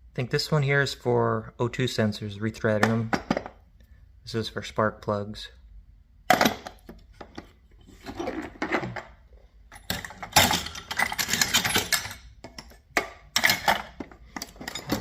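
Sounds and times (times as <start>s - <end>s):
metal hand tools clinking: 9.7s - 15.0s.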